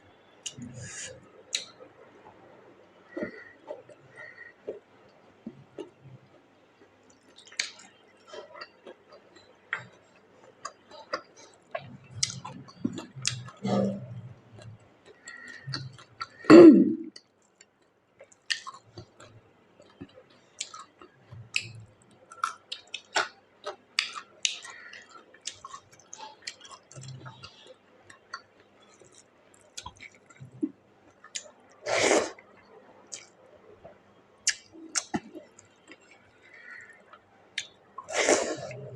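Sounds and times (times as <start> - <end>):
chewing and mouth smacks: 6.8 - 13.6, 14.6 - 16.4, 17.2 - 31.5, 33.1 - 36.4.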